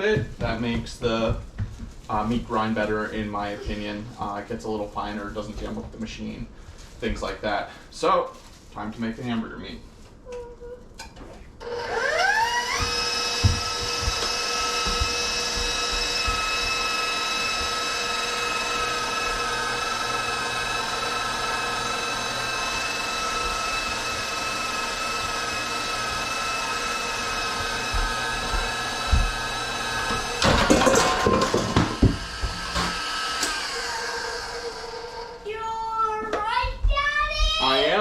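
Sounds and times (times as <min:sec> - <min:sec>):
meat grinder motor whine: 0:11.6 - 0:35.5.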